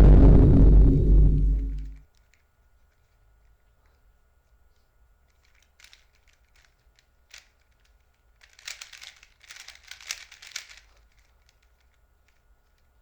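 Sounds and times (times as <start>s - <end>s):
puzzle cube clicking turns: 5.3s - 12.9s.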